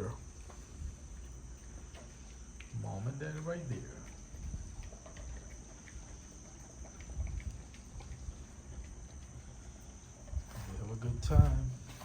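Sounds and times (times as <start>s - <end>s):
faint light ticks: 1.8s - 9.4s.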